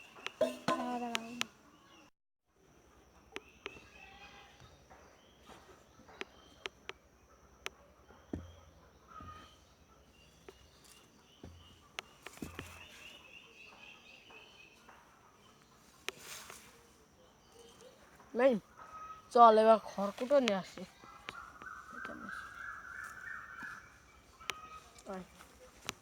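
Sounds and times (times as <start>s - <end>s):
birds chirping: 0.0s - 26.0s
insects buzzing: 2.6s - 26.0s
soft low thumps: 8.3s - 9.8s, 11.4s - 13.0s.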